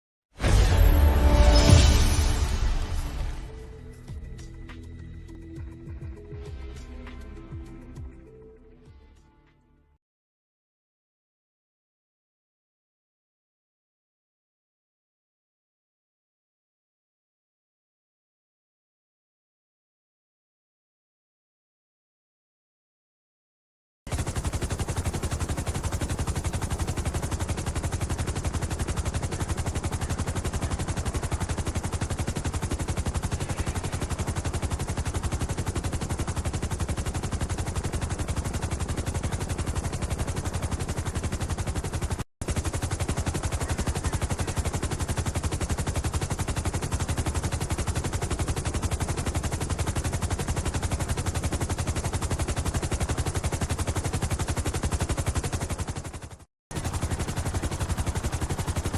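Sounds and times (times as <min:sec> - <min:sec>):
helicopter rotor chopping: 0:24.1 - 0:58.9.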